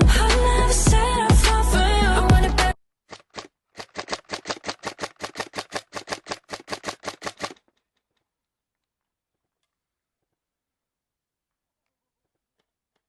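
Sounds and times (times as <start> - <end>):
airsoft gun rapid firing: 3.1 - 7.6.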